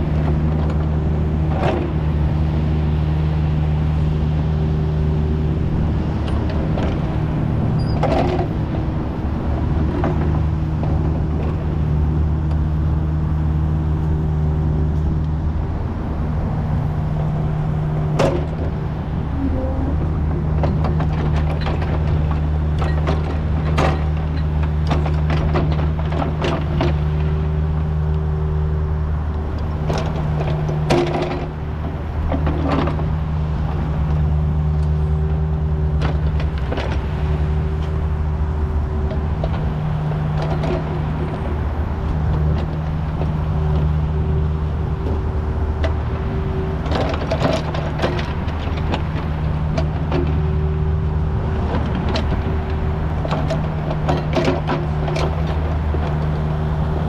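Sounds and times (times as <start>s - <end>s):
diesel engine running: 0.0s - 57.0s
machine knocks and clanks: 6.2s - 8.8s, 18.1s - 18.8s, 19.5s - 27.3s, 29.8s - 33.1s, 46.8s - 50.5s, 51.5s - 56.4s.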